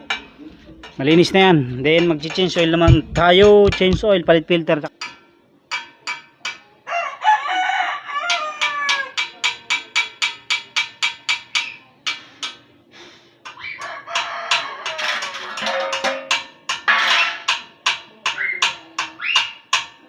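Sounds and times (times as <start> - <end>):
rooster crowing: 6.8 - 9.2, 13.6 - 15.6.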